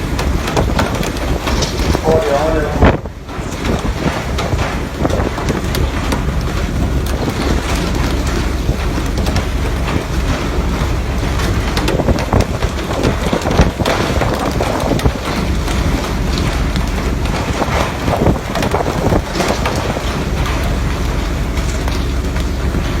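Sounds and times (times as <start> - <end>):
water splashing and rushing: 0.0 - 23.0
wind noise on microphone: 0.0 - 23.0.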